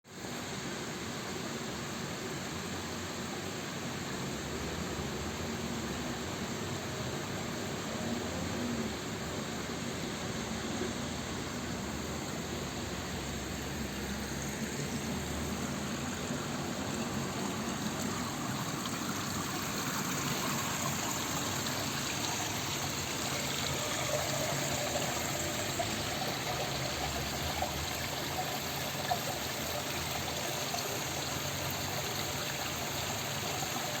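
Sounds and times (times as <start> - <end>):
water gushing from burst main: 9.9 - 34.0.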